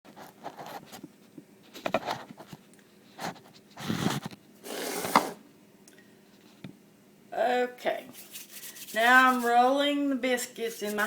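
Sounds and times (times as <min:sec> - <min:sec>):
rustling scrapes: 0:00.1 - 0:01.0, 0:01.6 - 0:05.4, 0:08.1 - 0:09.8.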